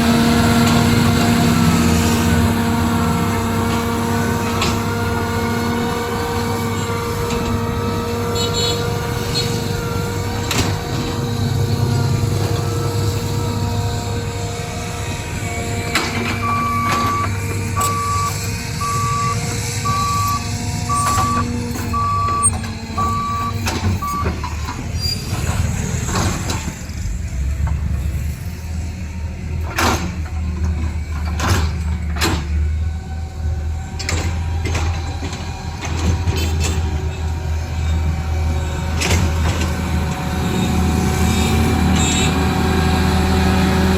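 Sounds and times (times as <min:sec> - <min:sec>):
low engine drone: 0:00.0 - 0:43.9
vehicle reversing alarm beeps: 0:16.1 - 0:24.7.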